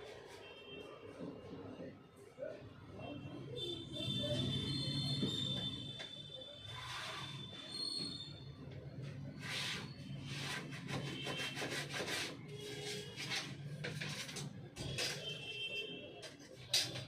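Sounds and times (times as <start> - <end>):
plastic parts rubbing and scraping: 9.4 - 15.4.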